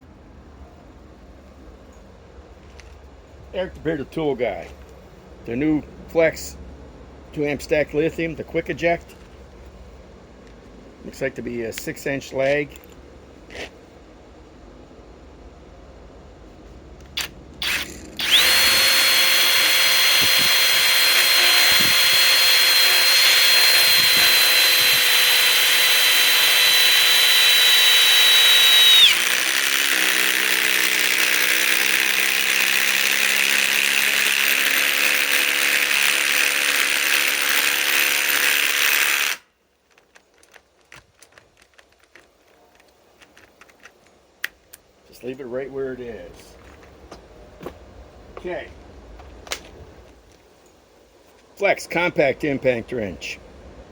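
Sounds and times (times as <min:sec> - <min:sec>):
impact driver whining: 0:17.2 - 0:39.4.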